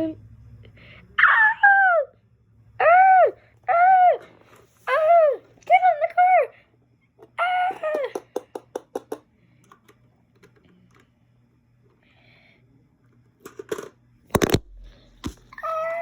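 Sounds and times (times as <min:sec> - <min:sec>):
toy pieces clicking and tapping: 0:07.8 - 0:11.0.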